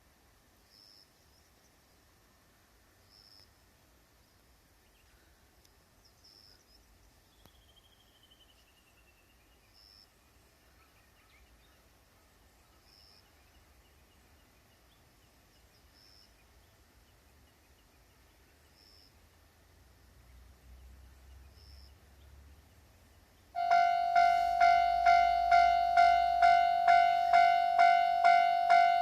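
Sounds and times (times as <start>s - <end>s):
bird trill: 23.6s - 29.0s.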